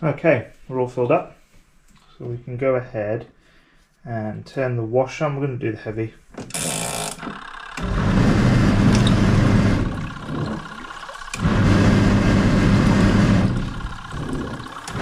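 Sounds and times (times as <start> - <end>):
washing machine motor hum: 6.8 - 15.0
water churning: 7.8 - 15.0.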